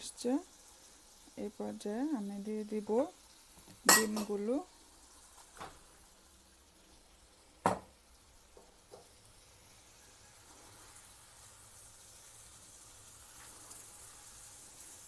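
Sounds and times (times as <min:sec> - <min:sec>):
oil sizzling in pan: 0:00.0 - 0:15.0
eggs knocking against pan: 0:07.6 - 0:08.0.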